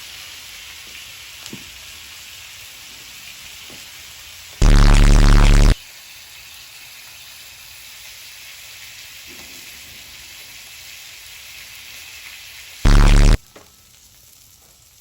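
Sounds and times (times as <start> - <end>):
loud blaring blast: 4.6 - 5.8, 12.9 - 13.4.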